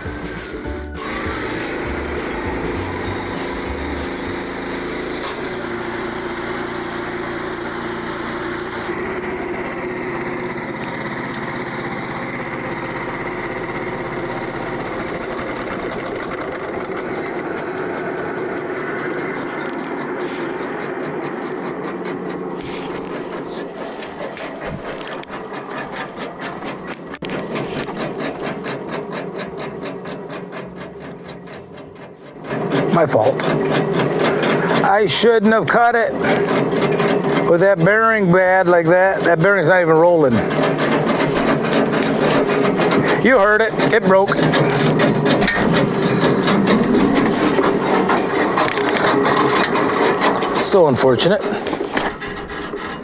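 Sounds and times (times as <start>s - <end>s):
bandsaw mill cutting board: 0.0s - 53.0s
rhythmic pulsing: 0.0s - 53.0s.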